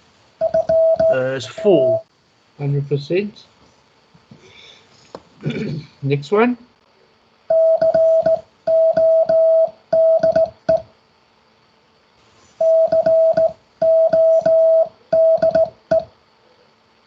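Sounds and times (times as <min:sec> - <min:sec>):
morse code beeps: 0:00.4 - 0:02.0, 0:07.5 - 0:10.8, 0:12.6 - 0:16.1.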